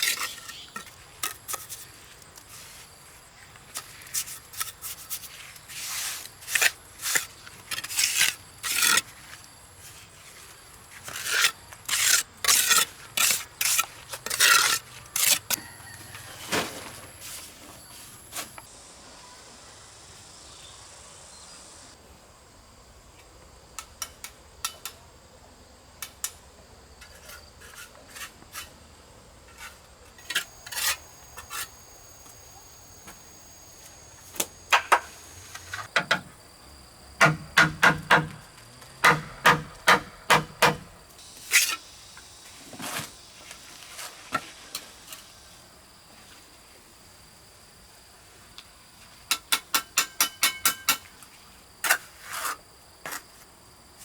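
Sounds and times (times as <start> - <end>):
faint insect drone: 0.0 - 54.0
sharp taps and knocks: 37.2 - 38.4, 39.0 - 40.9.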